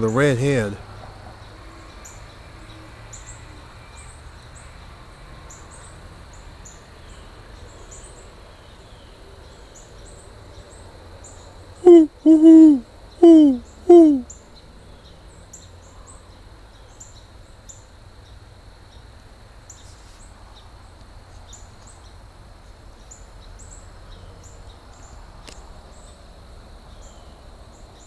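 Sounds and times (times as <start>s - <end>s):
owl hooting: 11.8s - 14.2s.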